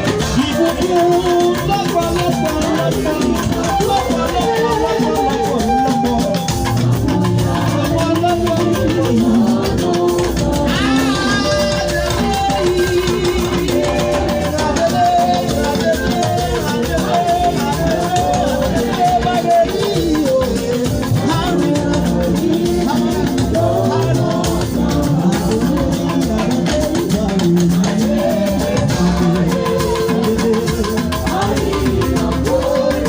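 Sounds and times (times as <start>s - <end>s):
drum kit: 0.0s - 33.0s
guitar: 0.0s - 33.0s
church choir singing: 6.6s - 33.0s.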